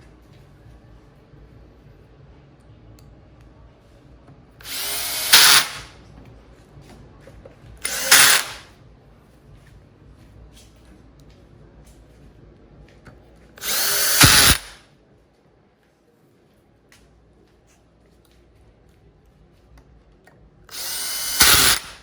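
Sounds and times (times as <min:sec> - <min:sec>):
cordless drill driving screws: 0:04.6 - 0:05.9, 0:07.8 - 0:08.6, 0:13.6 - 0:14.8, 0:20.7 - 0:22.0.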